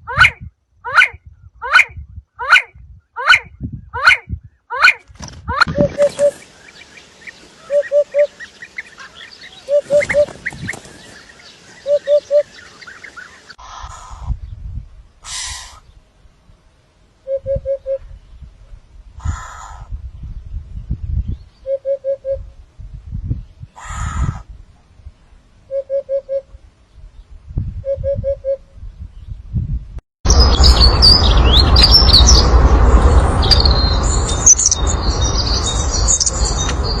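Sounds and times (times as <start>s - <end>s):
small birds chirping: 3.3s - 16.1s, 30.3s - 37.0s
low rumble: 28.7s - 37.0s.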